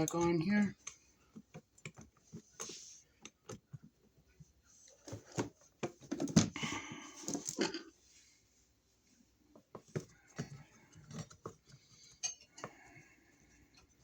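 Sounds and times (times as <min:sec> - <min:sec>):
metallic clinks and scraping: 0:11.9 - 0:14.0.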